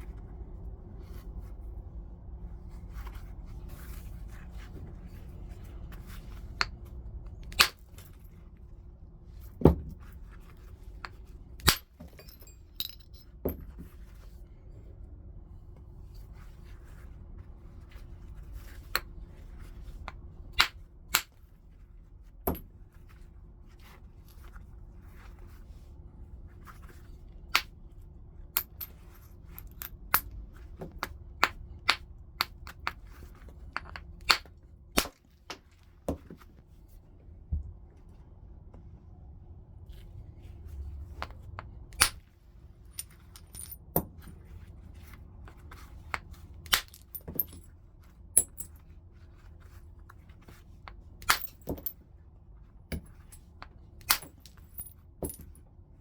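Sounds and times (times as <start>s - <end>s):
low steady hum: 0.0s - 56.0s
knapping tool striking stone: 46.6s - 47.2s.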